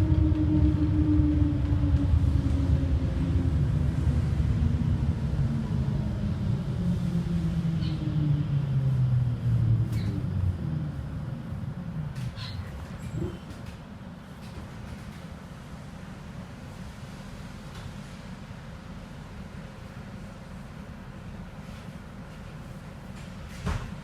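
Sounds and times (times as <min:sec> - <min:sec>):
bus engine rumble with whine: 0:00.0 - 0:24.0.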